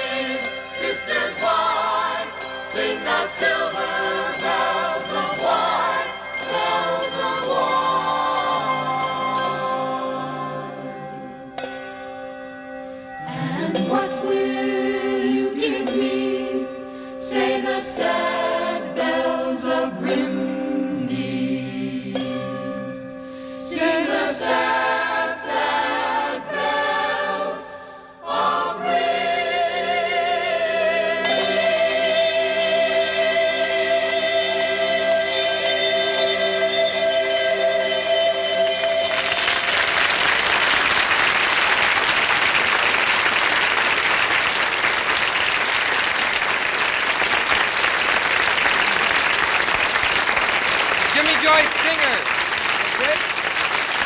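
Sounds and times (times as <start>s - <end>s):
choir singing sustained chords: 0.0s - 43.8s
audience applauding: 38.8s - 54.0s.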